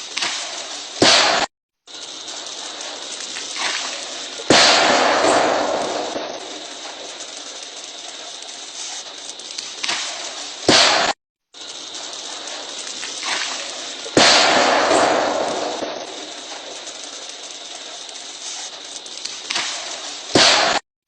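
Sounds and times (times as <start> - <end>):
loud bangs: 0.2 - 1.5, 3.3 - 7.6, 9.9 - 11.2, 12.6 - 17.0, 19.7 - 20.8
flowing water: 2.0 - 4.5.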